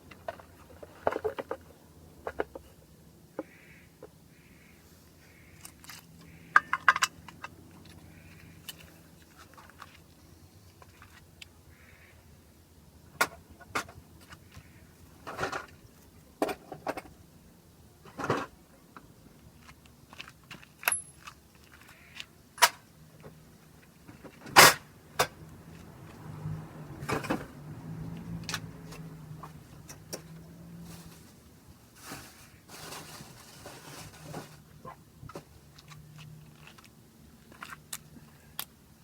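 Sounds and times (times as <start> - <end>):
tools and metal parts clinking: 20.1 - 21.9.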